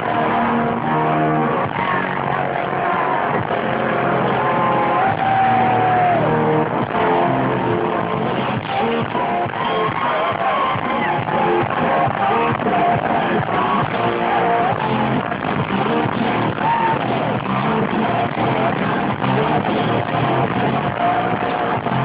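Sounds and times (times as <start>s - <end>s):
live hard rock band: 0.0s - 22.0s.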